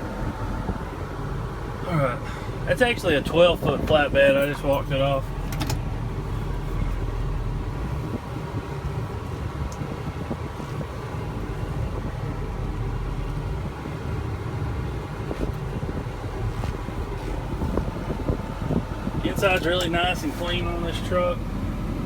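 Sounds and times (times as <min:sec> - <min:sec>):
truck engine idling: 0:00.0 - 0:22.0
wind on microphone: 0:07.8 - 0:12.2, 0:14.7 - 0:19.4.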